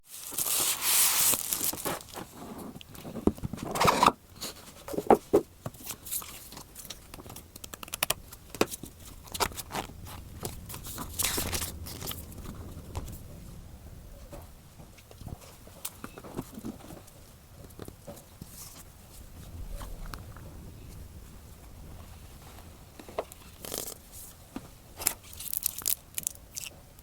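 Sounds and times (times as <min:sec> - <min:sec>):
plastic wrap crinkling: 0:00.0 - 0:03.0, 0:05.8 - 0:13.2, 0:22.4 - 0:26.8
cardboard and game pieces rustling: 0:00.1 - 0:13.2.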